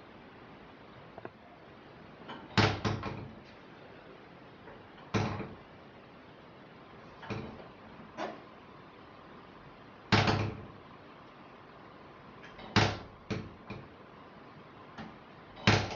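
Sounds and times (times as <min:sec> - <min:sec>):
door rattling in its frame: 0:10.1 - 0:10.7, 0:15.6 - 0:15.9.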